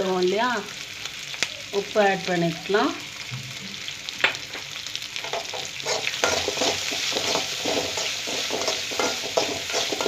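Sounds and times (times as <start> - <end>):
food sizzling in hot oil: 0.0 - 10.0
spatula scraping a pan: 5.2 - 10.0.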